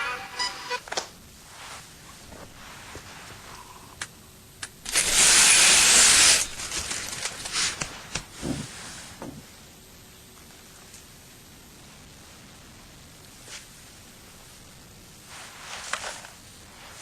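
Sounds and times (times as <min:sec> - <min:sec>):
loud hiss: 0:04.8 - 0:09.3
soft rustles and knocks: 0:07.6 - 0:09.5.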